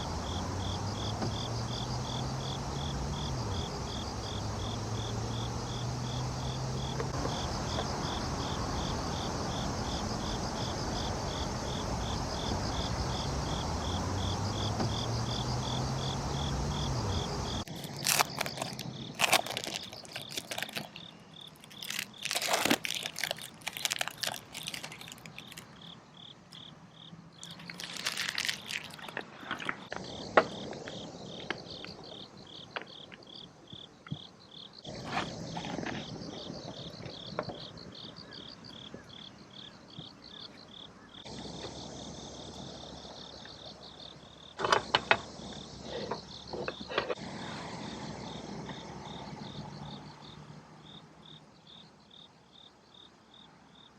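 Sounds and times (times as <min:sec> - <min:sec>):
insects chirping: 0:00.0 - 0:53.9
crunching and clicking: 0:17.6 - 0:25.8, 0:27.4 - 0:32.0.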